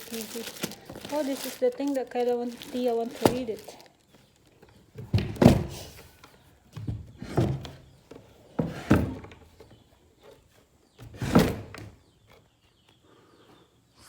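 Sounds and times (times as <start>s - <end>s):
dull thuds and knocks: 5.0s - 5.9s.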